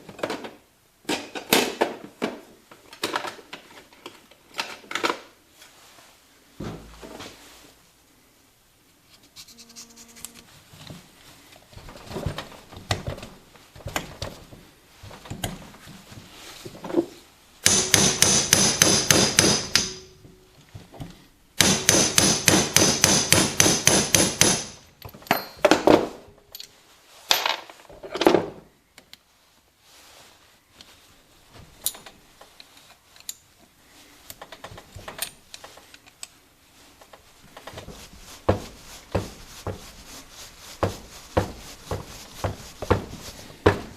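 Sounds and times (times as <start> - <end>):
rapid hammer taps on metal: 17.6 - 20.1
metal parts knocking and clinking: 25.0 - 25.9.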